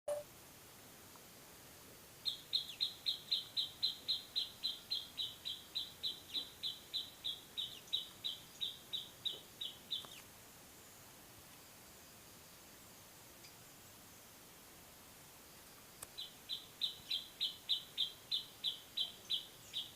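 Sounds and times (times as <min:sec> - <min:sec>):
songbird calling sharp high notes: 0:16.2 - 0:19.9.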